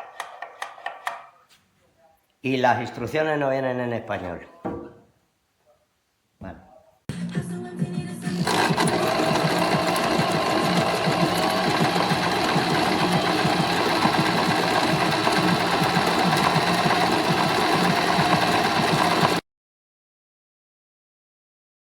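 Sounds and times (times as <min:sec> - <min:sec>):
sewing machine stitching fast: 0:08.3 - 0:19.4.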